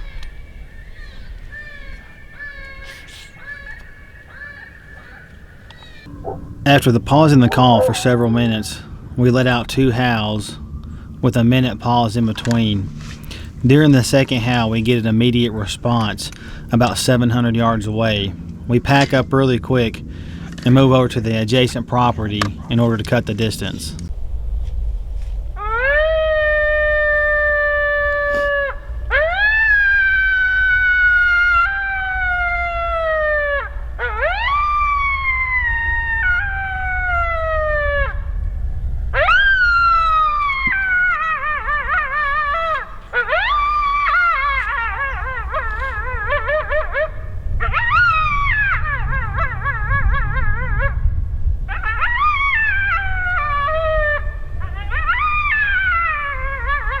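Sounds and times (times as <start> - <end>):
coyote pack howling and yipping: 0.9 - 10.4, 25.6 - 57.0
coyote howling: 3.4 - 10.1, 25.6 - 38.4, 39.1 - 57.0.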